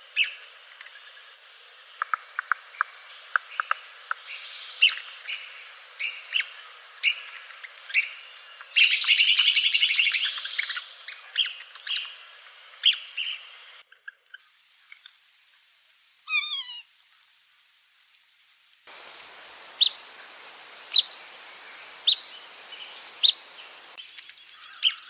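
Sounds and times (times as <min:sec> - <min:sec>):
woodpecker chattering run: 0:16.3 - 0:16.8, 0:18.9 - 0:25.0
woodpecker squeaky calls: 0:16.3 - 0:16.9, 0:18.9 - 0:25.0.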